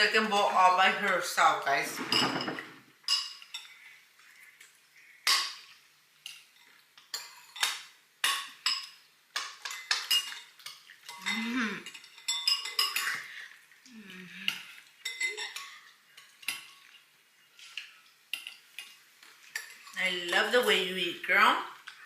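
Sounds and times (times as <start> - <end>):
spoon clinking against bowl: 7.1 - 13.2.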